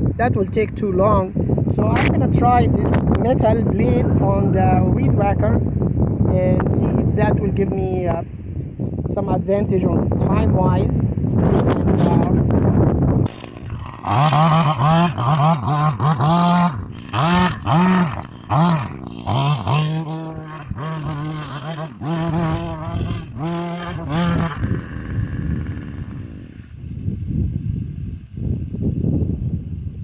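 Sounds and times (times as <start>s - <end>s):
weed whacker engine revving: 13.2s - 29.6s
blade cutting wheat stalks: 13.3s - 25.8s.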